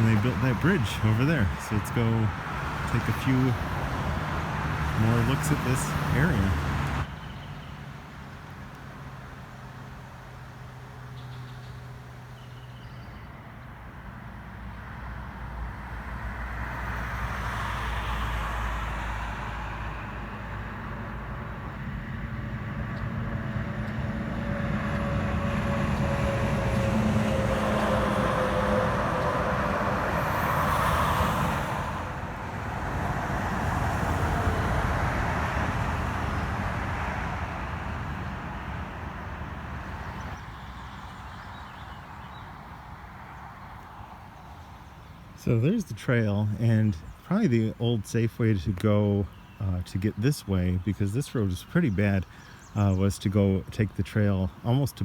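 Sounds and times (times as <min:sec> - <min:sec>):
falling vehicle whine: 0:00.0 - 0:07.1, 0:20.9 - 0:40.4
cars passing: 0:00.0 - 0:55.0.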